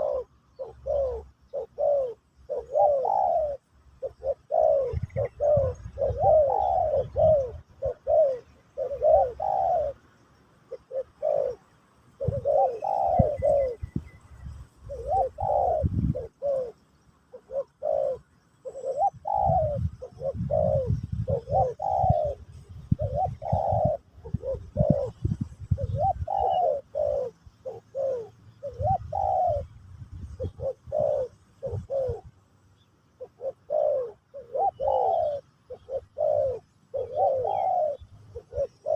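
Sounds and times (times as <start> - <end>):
dove cooing: 0.0 - 38.9.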